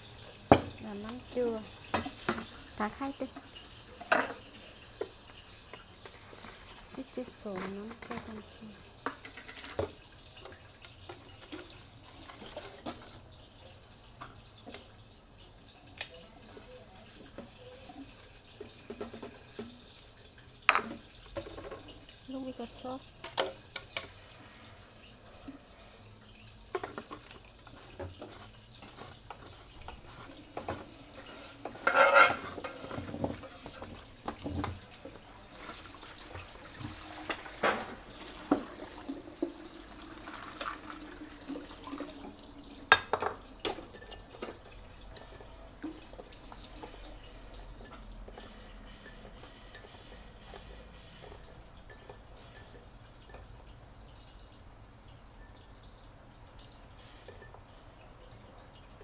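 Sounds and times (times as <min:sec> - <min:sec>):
water running from tap: 0:00.0 - 0:59.0
dishes and utensils clinking: 0:00.2 - 0:13.2, 0:15.8 - 0:22.3, 0:26.4 - 0:53.6.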